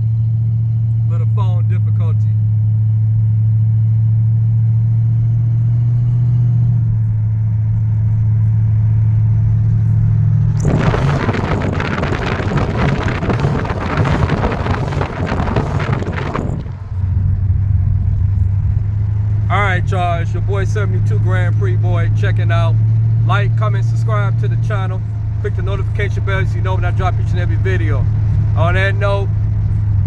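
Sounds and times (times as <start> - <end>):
car engine idling: 6.8 - 30.0
loud rushing noise: 10.4 - 17.4.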